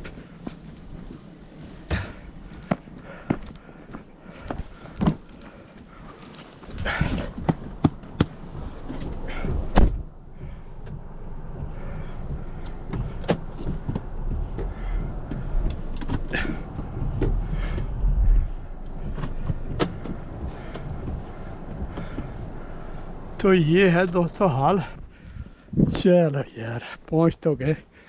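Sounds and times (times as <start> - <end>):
car driving slowly over snow: 0.0 - 26.3
loud thump: 9.6 - 11.0.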